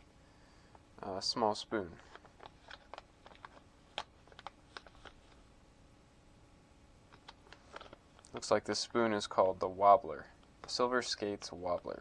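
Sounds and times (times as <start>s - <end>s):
plastic packaging clicks and taps: 2.1s - 5.2s.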